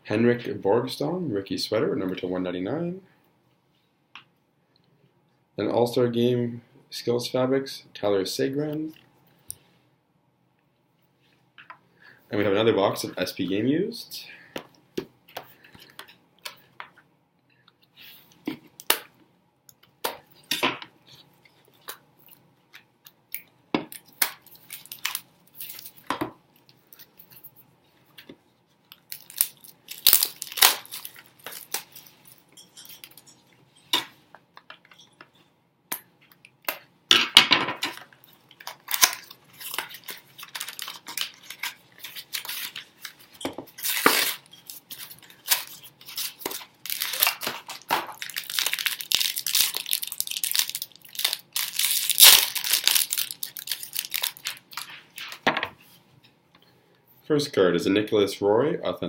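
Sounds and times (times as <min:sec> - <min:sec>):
plastic wrap and cardboard tearing: 0:24.0 - 0:26.1, 0:28.9 - 0:32.2, 0:37.9 - 0:55.4.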